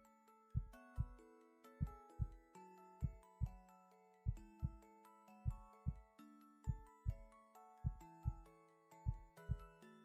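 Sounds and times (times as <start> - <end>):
soft bell-like melody: 0.0 - 10.0
heartbeat thumps: 5.5 - 6.0, 9.1 - 9.6.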